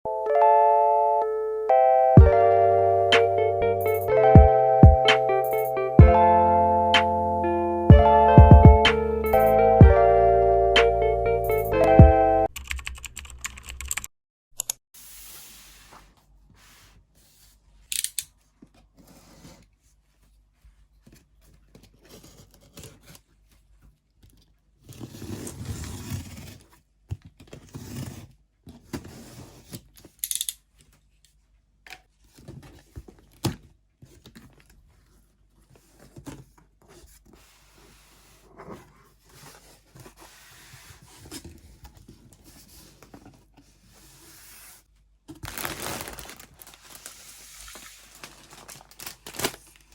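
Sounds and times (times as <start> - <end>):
box and wrapping rustling: 32.2 - 49.9
packaging being torn open: 45.4 - 47.1, 48.1 - 49.9.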